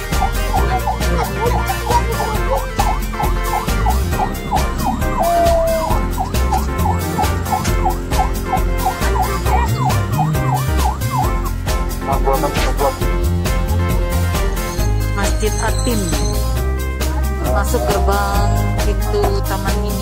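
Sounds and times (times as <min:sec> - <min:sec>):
ambulance siren yelping: 0:00.0 - 0:13.0, 0:17.2 - 0:19.1
background music with steady beat: 0:00.0 - 0:20.0.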